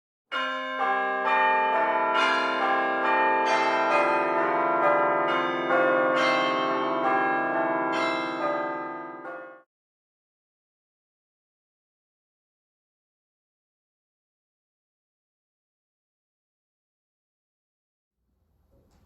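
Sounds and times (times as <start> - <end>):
church bells ringing: 0.3 - 9.7.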